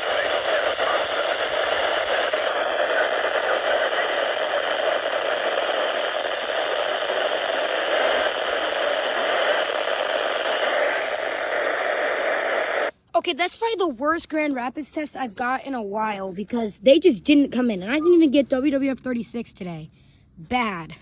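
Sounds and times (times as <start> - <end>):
radio static hiss: 0.0 - 13.8.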